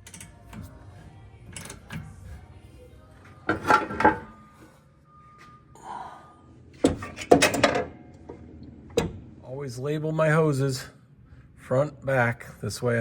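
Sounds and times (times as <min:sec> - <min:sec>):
tools and metal parts clanking: 0:00.0 - 0:00.8, 0:01.5 - 0:02.4, 0:03.5 - 0:04.4, 0:06.8 - 0:08.4.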